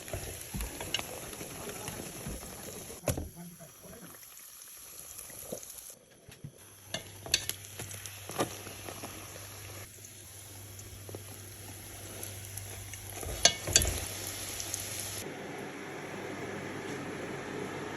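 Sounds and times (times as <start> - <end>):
flatbread sizzling in hot oil: 0.0 - 3.0, 4.0 - 6.0, 6.6 - 15.2.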